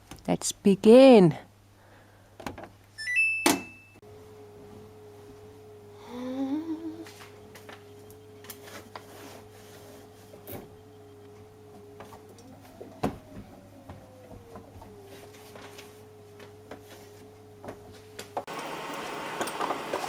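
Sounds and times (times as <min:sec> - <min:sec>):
washing machine hum: 0:04.0 - 0:20.0
person humming a tune: 0:04.1 - 0:18.4
faint clicks: 0:07.0 - 0:20.0.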